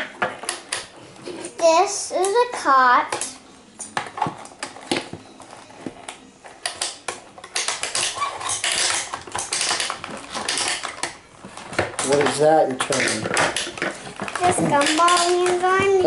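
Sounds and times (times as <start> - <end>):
plastic toy pieces clicking and rattling: 6.4 - 16.0.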